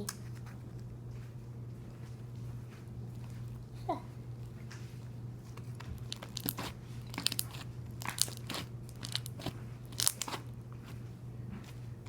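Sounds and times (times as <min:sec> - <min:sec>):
slime crackling and popping: 0:05.8 - 0:10.4.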